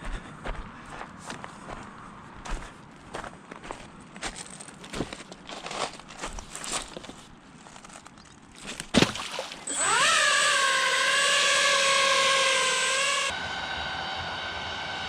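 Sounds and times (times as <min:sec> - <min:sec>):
electric motor whining: 0:09.6 - 0:15.0.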